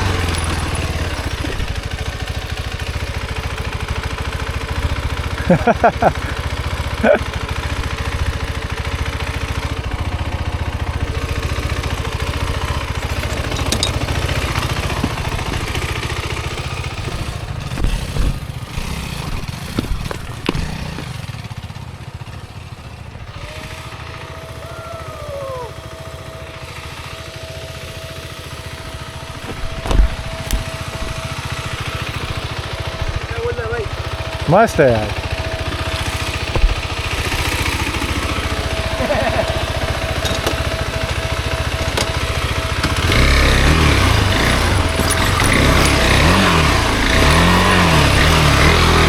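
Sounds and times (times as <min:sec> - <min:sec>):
motorcycle engine running: 0:00.0 - 0:49.0
sharp knocks and thumps: 0:12.5 - 0:16.0, 0:16.9 - 0:21.4, 0:29.3 - 0:32.4, 0:36.3 - 0:38.2.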